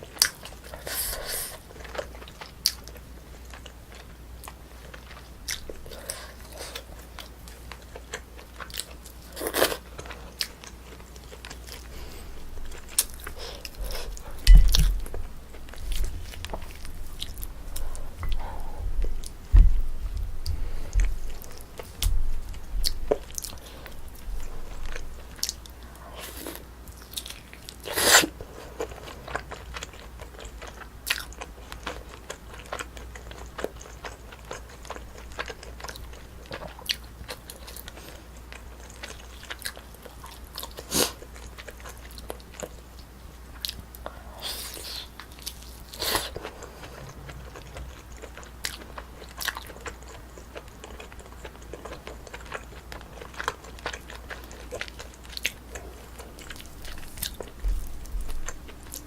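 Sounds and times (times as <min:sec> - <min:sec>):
biting and chewing: 0:00.0 - 0:42.8, 0:43.5 - 0:59.0
low hum: 0:11.7 - 0:26.2.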